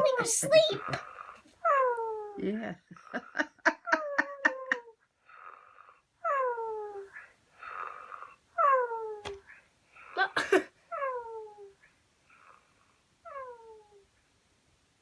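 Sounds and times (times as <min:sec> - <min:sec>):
person snoring: 0:07.6 - 0:08.4.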